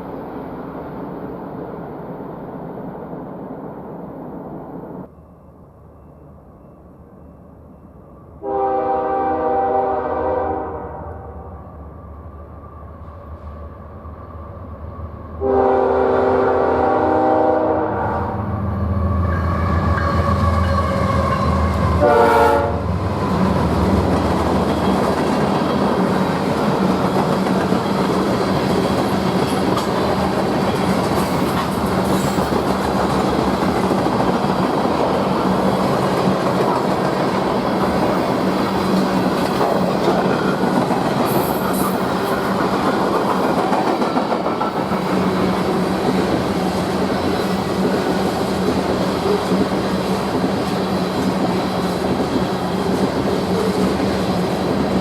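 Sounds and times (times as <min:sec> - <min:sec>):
locomotive air horn: 0:08.4 - 0:11.5, 0:15.4 - 0:22.9
train wheels on rails: 0:18.5 - 0:55.0.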